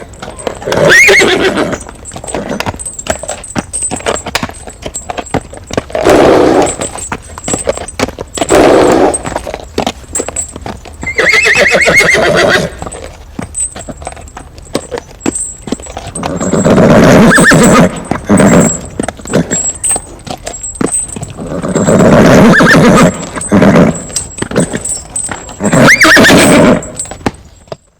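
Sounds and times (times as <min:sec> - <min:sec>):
horse hooves clip-clopping: 0:00.0 - 0:27.9
horse whinnying: 0:00.2 - 0:02.9, 0:05.9 - 0:07.1, 0:08.4 - 0:09.5, 0:11.0 - 0:13.1, 0:15.8 - 0:20.0, 0:20.9 - 0:27.2.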